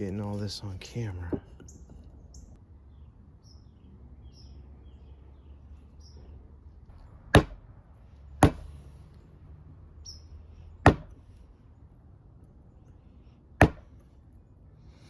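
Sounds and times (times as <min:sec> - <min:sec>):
mallet striking wood chisel: 0:07.3 - 0:07.6, 0:08.4 - 0:08.7, 0:10.8 - 0:11.2, 0:13.6 - 0:13.9.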